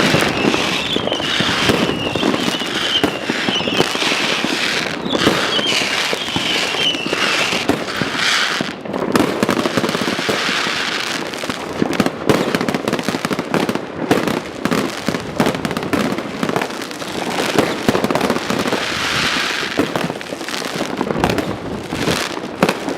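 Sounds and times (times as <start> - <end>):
firework hissing rush: 0.0 - 8.8, 18.6 - 19.9
firework whistle: 0.0 - 11.3, 12.3 - 12.7, 17.2 - 20.2
fireworks crackling and banging: 0.0 - 22.9.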